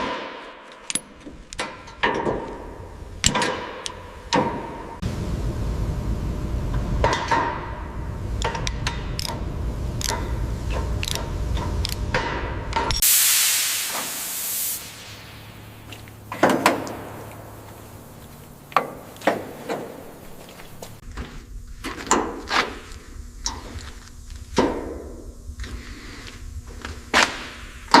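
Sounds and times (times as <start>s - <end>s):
low rumble: 3.9s - 21.7s
loud hiss of spray: 13.0s - 20.1s.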